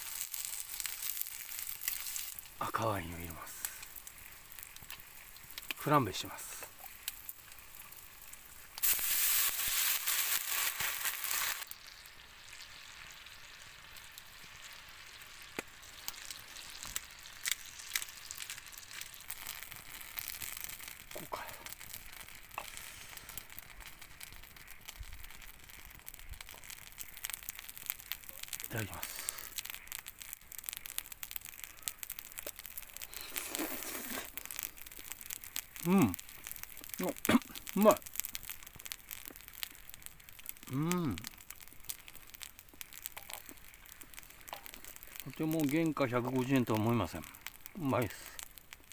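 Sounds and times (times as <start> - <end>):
food sizzling in a hot pan: 0.0 - 48.9
fat popping: 16.8 - 45.6.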